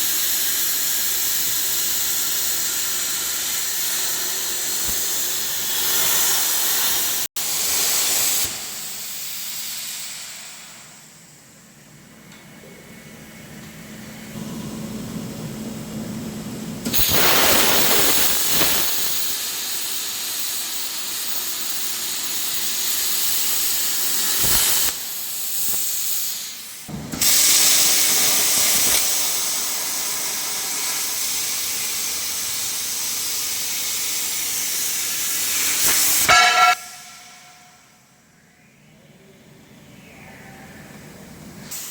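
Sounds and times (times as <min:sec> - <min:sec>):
plasma torch hissing: 0:00.0 - 0:11.2, 0:16.8 - 0:37.9, 0:41.6 - 0:41.9.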